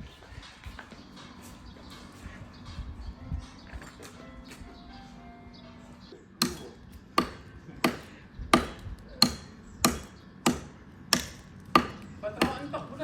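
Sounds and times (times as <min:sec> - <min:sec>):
axe chopping tree trunk: 0:06.4 - 0:12.7.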